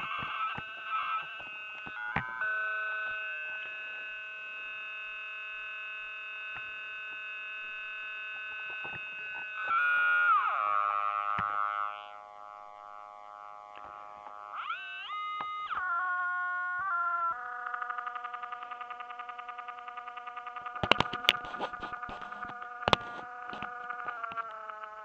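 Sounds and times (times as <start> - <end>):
faint clicks: 17.3 - 25.0.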